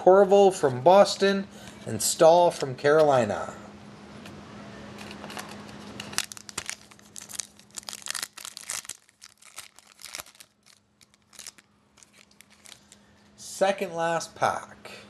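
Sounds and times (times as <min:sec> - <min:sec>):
foil wrapper crinkling and tearing: 0:05.0 - 0:13.1.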